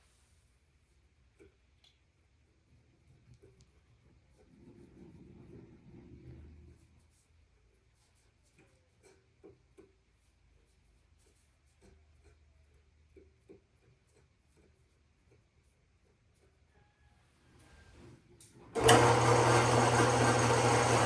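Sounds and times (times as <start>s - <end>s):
faint light taps and scratches: 3.0s - 16.9s.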